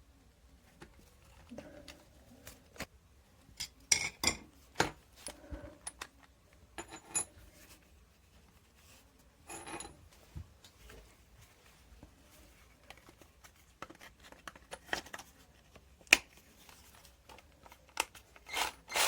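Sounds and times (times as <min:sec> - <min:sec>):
metal tools clinking: 0:06.8 - 0:07.3, 0:09.5 - 0:10.0.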